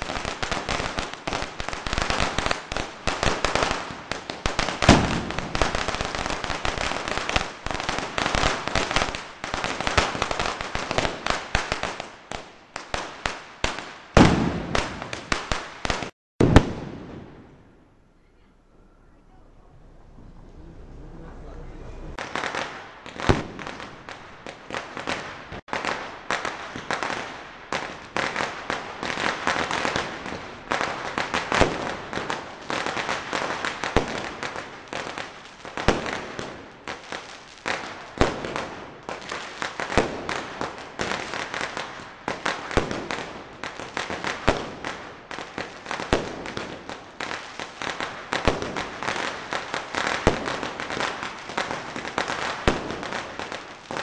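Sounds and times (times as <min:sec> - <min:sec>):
firecrackers popping and crackling: 0:00.0 - 0:17.6, 0:22.2 - 0:54.0
loud firecracker bangs: 0:00.0 - 0:17.8, 0:22.1 - 0:54.0.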